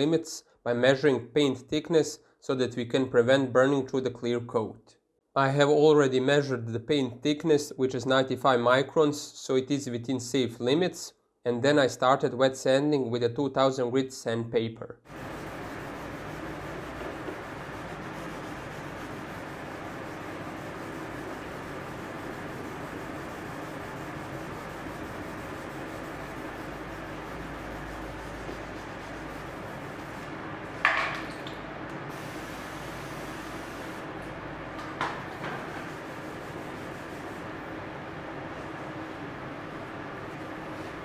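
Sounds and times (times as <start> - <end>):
wet sandpaper rubbing: 15.1 - 30.3, 35.6 - 37.6.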